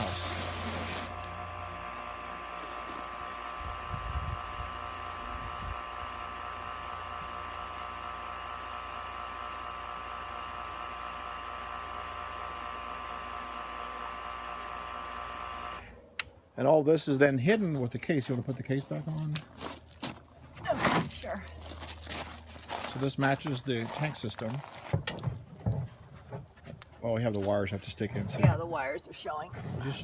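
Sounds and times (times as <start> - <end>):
electric water pump humming: 0.0 - 16.3.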